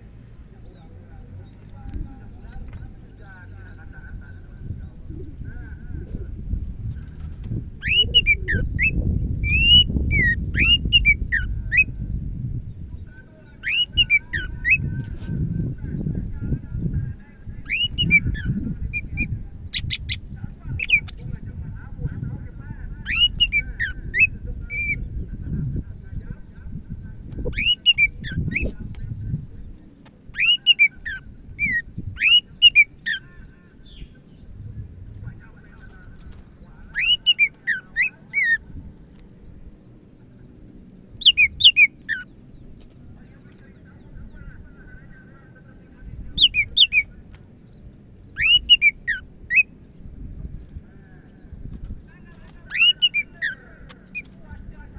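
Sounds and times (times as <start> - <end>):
steady low rumble: 0.0 - 54.9
bird whistling song: 7.8 - 12.2, 13.6 - 14.9, 17.6 - 21.4, 23.0 - 25.1, 26.4 - 28.9, 30.3 - 34.2, 36.3 - 38.6, 41.2 - 42.4, 45.8 - 47.2, 48.0 - 50.5, 52.6 - 54.4.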